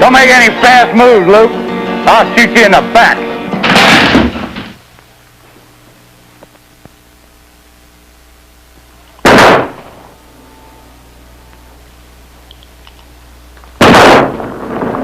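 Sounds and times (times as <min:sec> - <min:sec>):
loud gunshot: 0:03.6 - 0:04.8, 0:09.2 - 0:10.0, 0:13.8 - 0:15.0
light clicks: 0:12.4 - 0:13.7.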